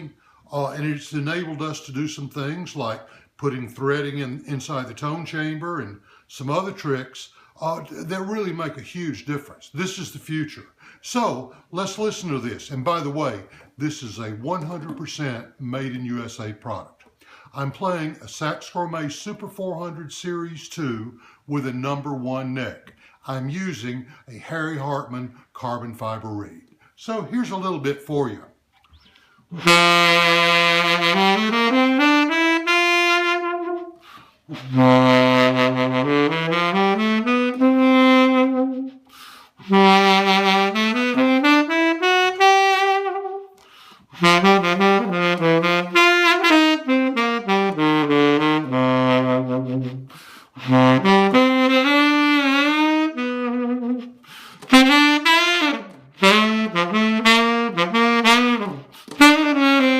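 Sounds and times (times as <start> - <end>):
tenor saxophone jazz solo: 29.2 - 59.9.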